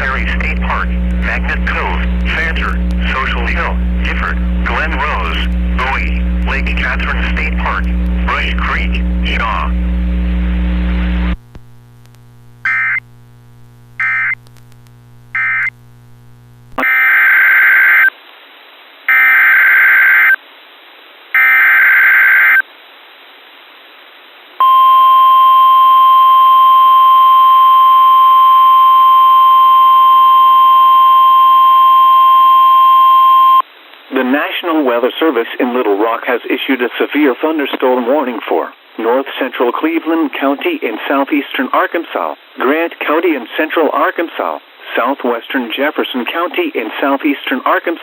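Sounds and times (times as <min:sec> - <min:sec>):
short beeps: 0:24.6 - 0:33.6.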